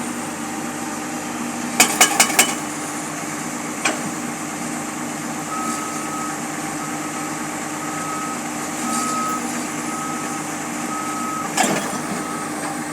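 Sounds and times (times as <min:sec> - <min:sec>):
heavy machine engine running: 0:00.0 - 0:12.9
backup alarm beeping: 0:05.5 - 0:12.6.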